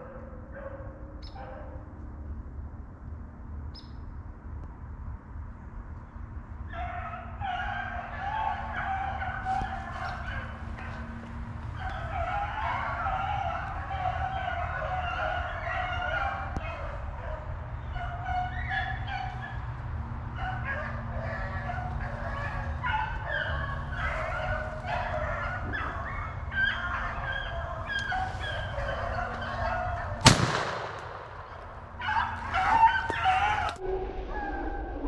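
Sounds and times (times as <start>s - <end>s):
hounds baying: 0.0s - 2.1s, 6.6s - 33.8s
low steady rumble: 16.5s - 35.0s
gunshot echoing: 30.2s - 32.6s.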